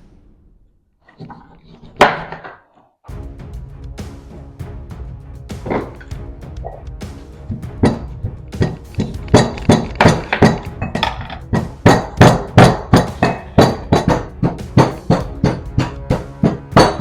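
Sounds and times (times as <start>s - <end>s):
pestle pounding in a mortar: 7.8s - 17.0s.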